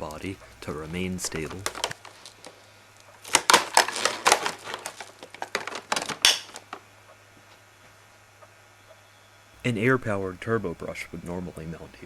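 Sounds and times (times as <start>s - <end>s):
plastic hose clips clattering: 0.0s - 2.6s, 3.2s - 6.8s.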